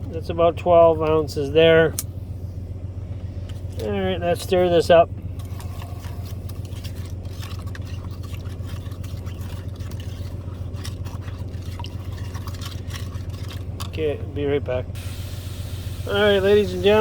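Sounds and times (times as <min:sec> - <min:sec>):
steady low hum: 0:00.0 - 0:17.0
spoon stirring in a cup: 0:06.2 - 0:14.0.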